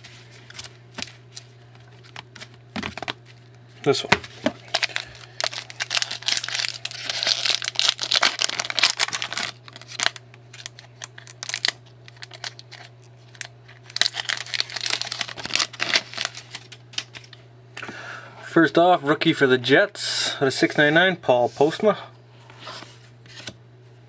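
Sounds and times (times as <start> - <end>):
card pack wrapper tearing and crinkling: 0.4 - 3.4, 4.0 - 17.4.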